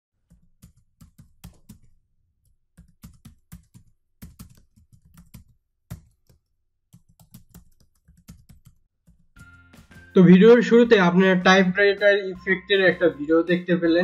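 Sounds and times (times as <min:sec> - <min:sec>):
keyboard keys clicking: 0:00.2 - 0:09.6.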